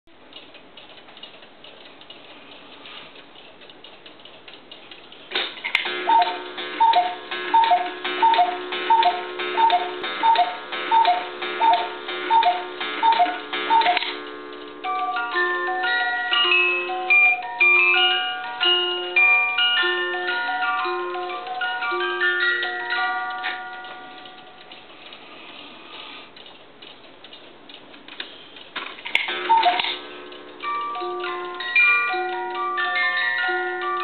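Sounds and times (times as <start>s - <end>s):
clock ticking: 0.1s - 25.4s, 26.3s - 34.0s
clock strike click: 5.8s - 15.0s
cuckoo clock call: 5.9s - 24.9s, 29.3s - 34.0s
music box tune: 5.9s - 25.2s, 29.3s - 34.0s.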